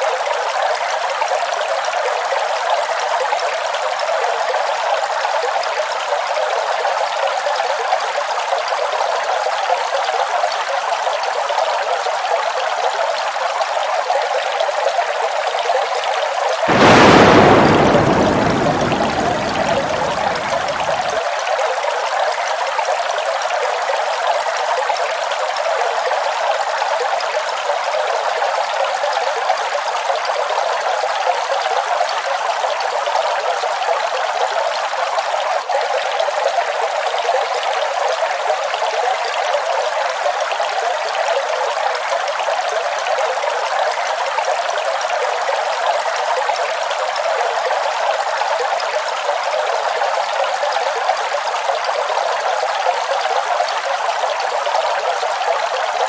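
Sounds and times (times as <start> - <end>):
waterfall rushing water: 16.6 - 21.2.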